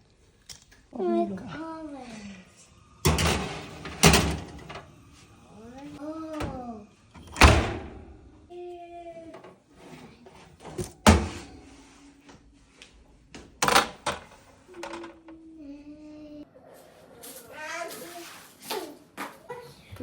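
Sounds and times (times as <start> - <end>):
cabinet doors banging shut: 10.8 - 11.5.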